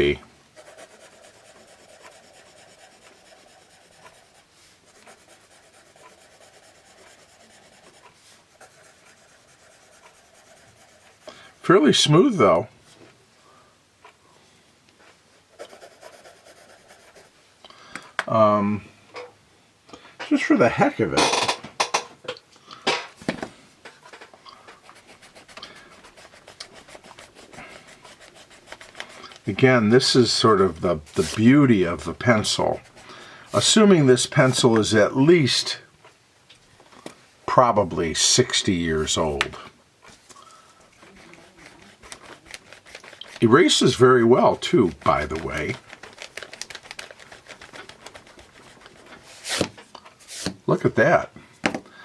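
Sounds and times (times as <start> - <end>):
pencil scratching on paper: 0.0 - 11.6, 15.6 - 17.4, 24.8 - 33.8, 41.0 - 49.7.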